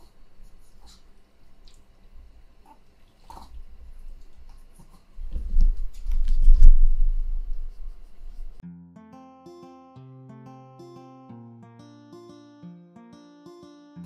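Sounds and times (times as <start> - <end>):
faint small clicks: 1.6 - 1.9
rustles: 3.1 - 8.6
rubbing against microphone: 3.3 - 8.6.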